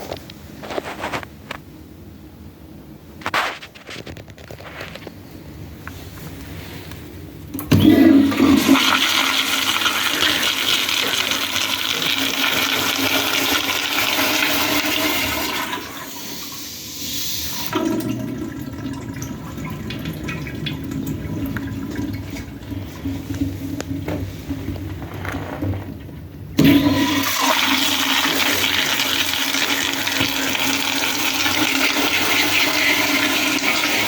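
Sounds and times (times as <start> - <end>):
toilet flushing: 7.5 - 34.0.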